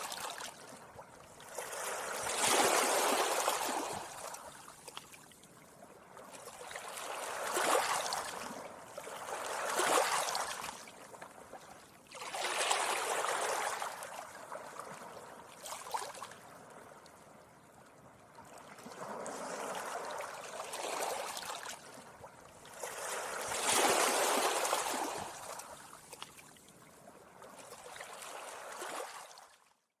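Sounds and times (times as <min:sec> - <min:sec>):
sea waves washing up beach: 0:01.4 - 0:04.8, 0:06.5 - 0:10.9, 0:22.7 - 0:25.9.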